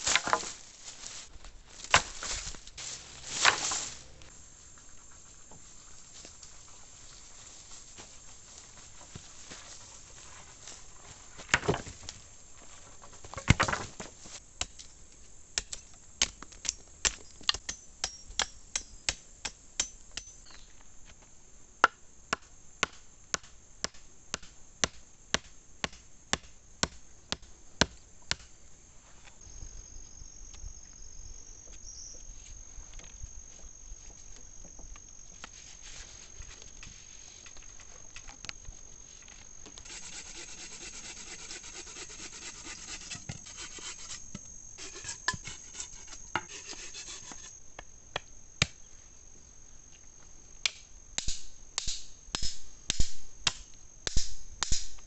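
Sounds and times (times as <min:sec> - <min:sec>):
crickets trilling: 0:00.0 - 0:55.0
wood chopping strikes: 0:01.8 - 0:02.4, 0:15.6 - 0:20.3, 0:21.8 - 0:28.5, 0:50.6 - 0:55.0.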